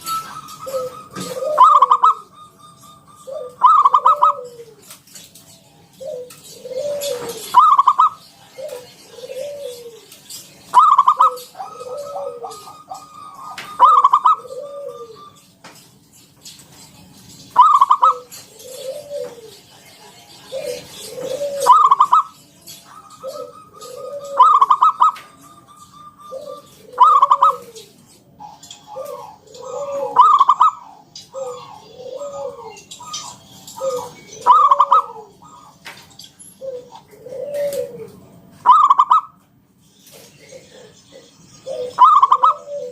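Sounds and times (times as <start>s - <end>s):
dove cooing with trill: 0.0s - 15.6s, 16.7s - 39.5s, 40.1s - 42.9s.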